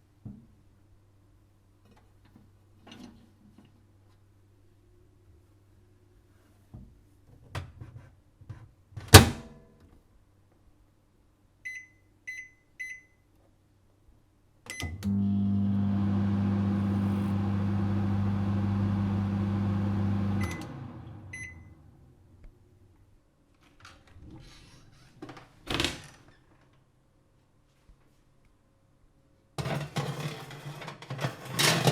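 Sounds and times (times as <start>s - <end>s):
microwave keypad beeps: 11.7s - 13.2s, 20.0s - 20.7s, 21.3s - 21.7s
microwave humming: 14.7s - 22.2s
microwave clicks: 16.2s - 20.9s.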